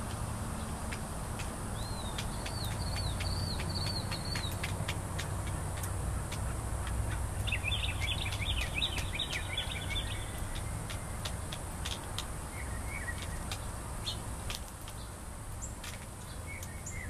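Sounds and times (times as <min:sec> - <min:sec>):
sharp ticks: 0:00.8 - 0:12.4
songbird twittering: 0:01.7 - 0:14.2, 0:14.9 - 0:17.0.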